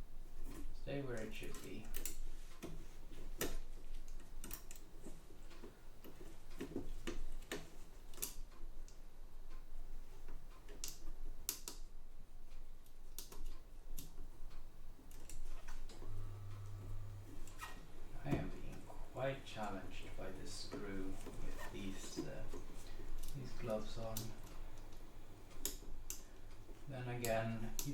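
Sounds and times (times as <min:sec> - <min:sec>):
low hum: 0:15.9 - 0:21.5.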